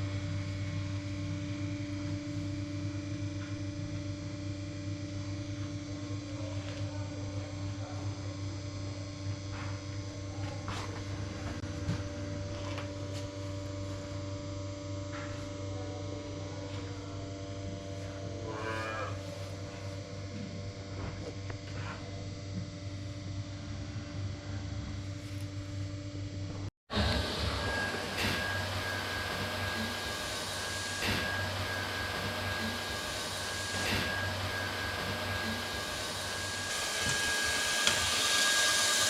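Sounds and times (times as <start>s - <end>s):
low machinery hum: 0.0s - 39.0s
cow mooing: 18.4s - 19.3s.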